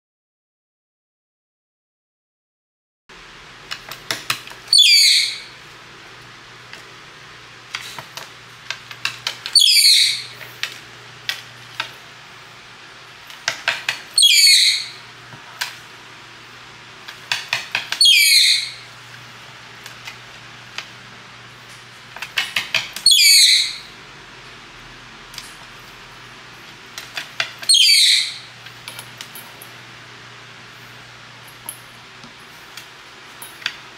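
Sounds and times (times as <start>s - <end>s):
parakeet screeching: 4.7s - 5.6s, 9.5s - 10.4s, 14.2s - 15.0s, 18.0s - 18.9s, 23.0s - 24.0s, 27.6s - 28.5s.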